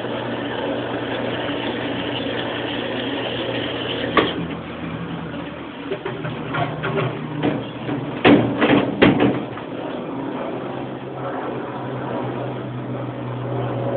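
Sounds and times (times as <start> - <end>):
washing machine motor hum: 0.0 - 13.9
washing machine drum knocking: 5.8 - 9.7.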